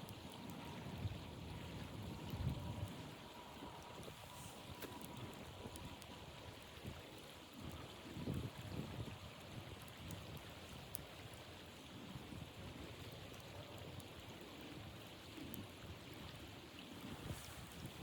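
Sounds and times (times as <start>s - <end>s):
faint ticks: 3.8s - 6.1s, 9.7s - 11.1s, 15.4s - 15.6s
blizzard wind blowing: 17.0s - 18.0s.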